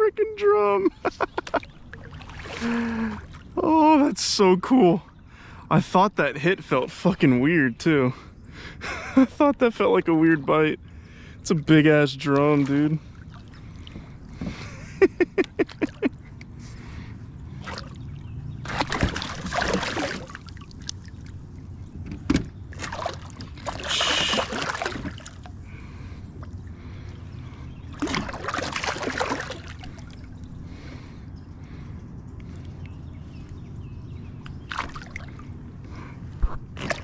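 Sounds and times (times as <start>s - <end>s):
water splashing and sloshing: 1.0s - 4.1s, 12.2s - 32.9s, 34.3s - 37.0s.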